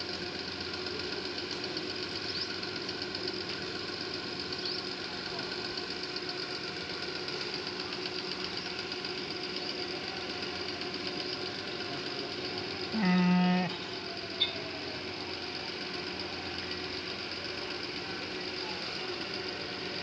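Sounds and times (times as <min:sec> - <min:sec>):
engine-like hum: 0:00.0 - 0:20.0
sheep bleating: 0:12.9 - 0:13.8.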